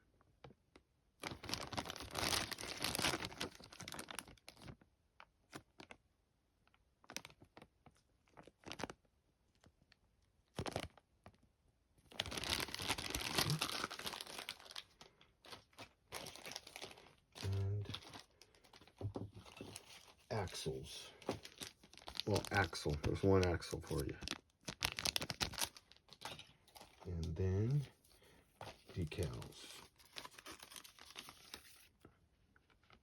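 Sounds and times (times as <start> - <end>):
plastic bags crinkling: 1.2 - 4.8, 8.3 - 9.0, 10.5 - 11.0, 12.1 - 31.9.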